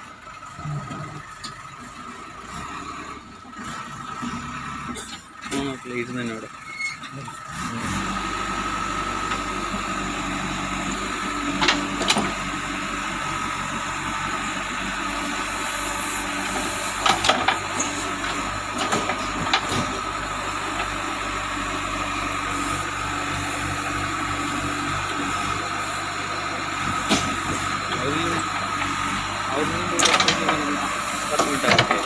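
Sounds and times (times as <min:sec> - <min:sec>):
diesel engine running: 0:00.0 - 0:32.0
constant whine: 0:08.6 - 0:32.0.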